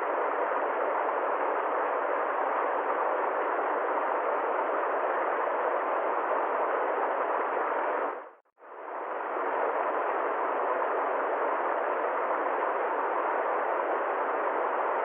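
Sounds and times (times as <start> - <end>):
steady rushing noise: 0.0 - 15.0.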